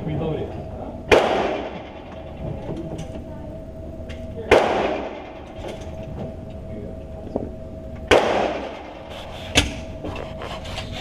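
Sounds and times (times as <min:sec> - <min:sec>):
gunshots with echo: 0:01.1 - 0:02.6, 0:04.5 - 0:06.0, 0:08.1 - 0:09.1.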